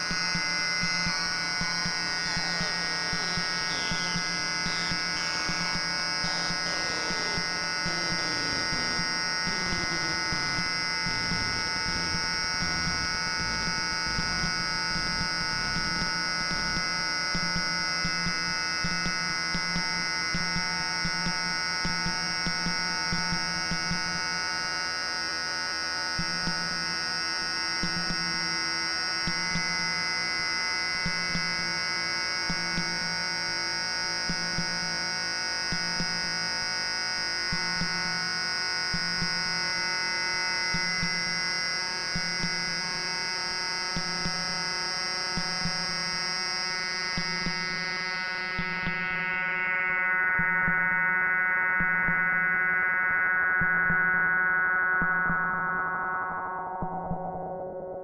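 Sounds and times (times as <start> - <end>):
buzzing synthesizer drone: 0.0 - 52.8
falling synth pitch sweeps: 2.1 - 17.4.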